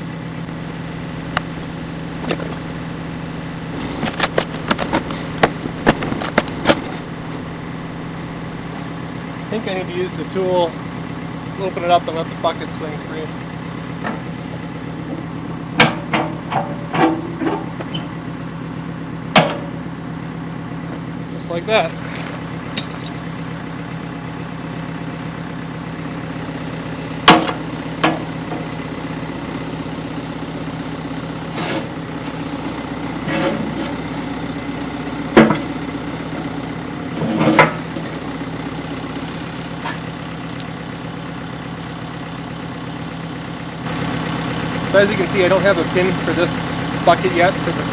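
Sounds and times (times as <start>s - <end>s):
diesel engine idling: 0.0s - 47.9s
metal clanks: 0.4s - 8.9s
short clatter: 0.4s - 8.9s.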